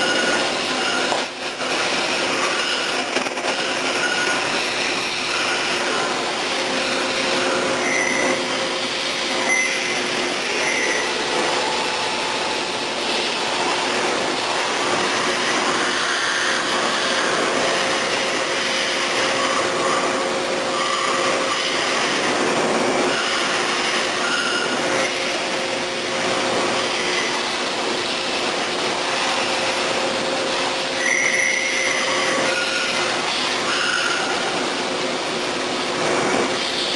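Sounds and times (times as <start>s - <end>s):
milling machine hiss and hum: 0.0s - 36.9s
short high squeals: 2.3s - 6.1s, 6.8s - 8.5s, 9.4s - 12.0s, 23.1s - 25.1s, 30.9s - 34.4s.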